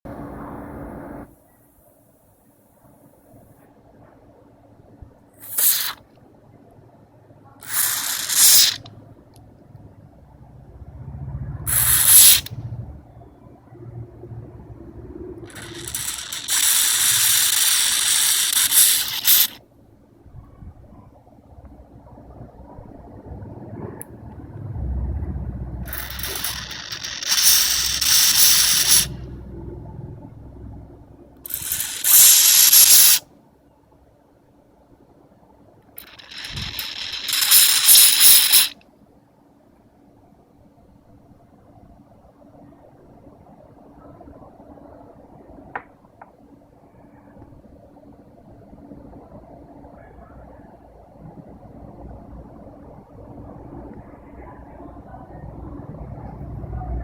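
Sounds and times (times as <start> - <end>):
hissing spray bursts: 5.4 - 6.0, 7.6 - 8.9, 11.7 - 12.6, 15.5 - 19.6, 25.9 - 29.3, 31.4 - 33.2, 36.0 - 38.8
low hum: 7.4 - 18.6, 19.7 - 32.5, 46.9 - 57.0
handling rumble: 20.3 - 32.3.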